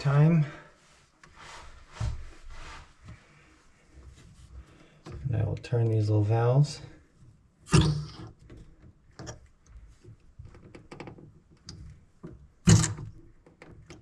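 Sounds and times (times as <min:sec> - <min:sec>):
light clicks and taps: 0:05.0 - 0:06.1.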